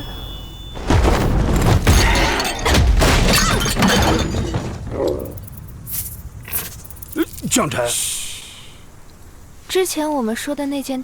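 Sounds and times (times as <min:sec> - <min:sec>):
crashing and shattering: 0:00.8 - 0:07.0
deep rumble: 0:02.9 - 0:08.3.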